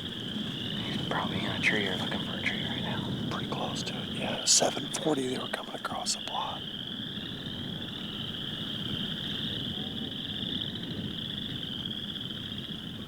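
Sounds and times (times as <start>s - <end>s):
low rumbling noise: 0.0s - 6.8s
frogs trilling: 0.0s - 13.0s.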